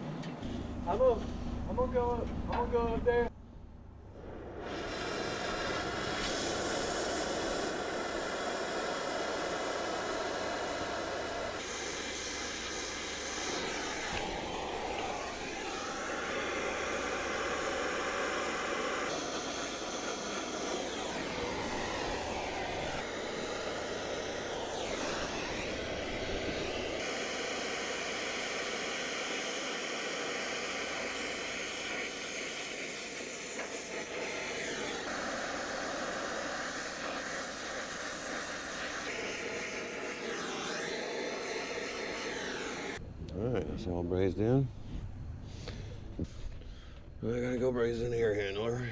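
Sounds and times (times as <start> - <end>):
torch flame hissing: 4.1 - 43.0.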